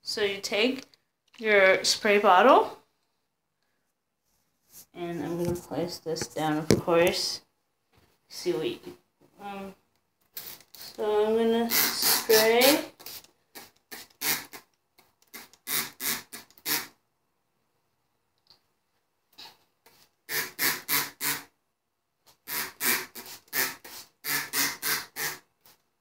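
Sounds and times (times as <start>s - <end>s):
spray bottle squirting: 10.4s - 11.0s, 11.7s - 17.0s, 20.3s - 21.5s, 22.4s - 25.4s.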